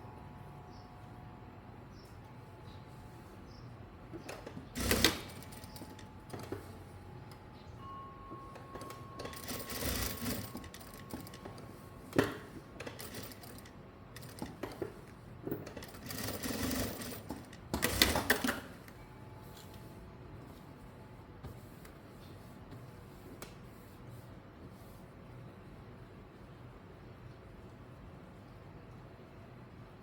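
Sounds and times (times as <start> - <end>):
sewing machine stitching: 4.2 - 6.6, 8.8 - 11.5, 12.2 - 14.9, 15.6 - 18.8.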